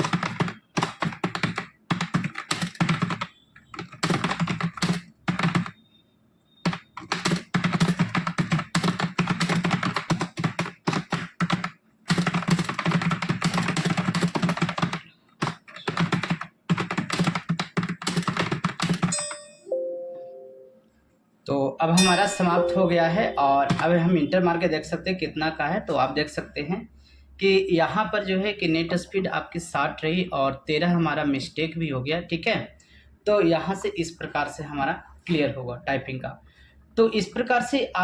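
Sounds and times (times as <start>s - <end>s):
fast typing on keyboard: 0.0s - 5.8s, 6.6s - 19.2s, 23.6s - 24.0s
short tone: 19.2s - 20.9s, 22.0s - 23.7s.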